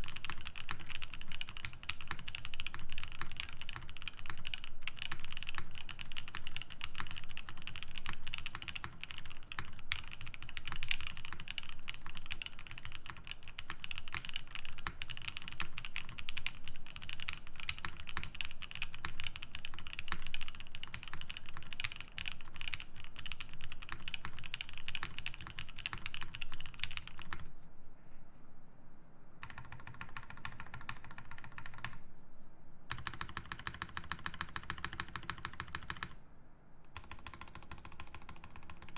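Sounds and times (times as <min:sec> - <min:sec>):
fast typing on mechanical keyboard: 0:00.0 - 0:27.5, 0:29.4 - 0:32.0, 0:32.9 - 0:36.2, 0:36.9 - 0:38.9.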